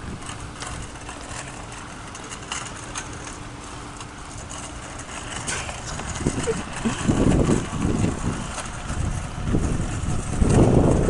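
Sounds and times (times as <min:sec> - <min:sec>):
wind buffeting microphone: 0:00.0 - 0:03.2, 0:04.0 - 0:11.0
street noise: 0:00.0 - 0:11.0.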